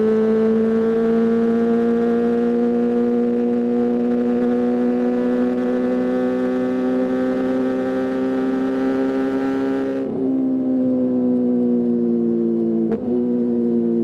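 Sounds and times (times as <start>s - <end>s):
motorcycle engine at high revs: 0.0s - 14.0s.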